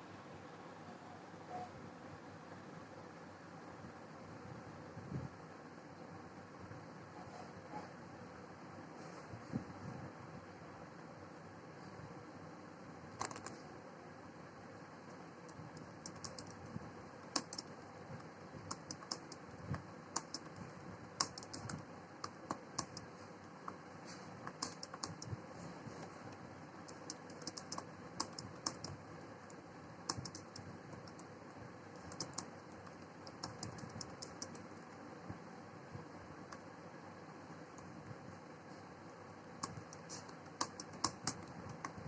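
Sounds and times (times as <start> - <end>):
keyboard typing: 13.2 - 13.6, 15.4 - 35.0, 39.6 - 42.0.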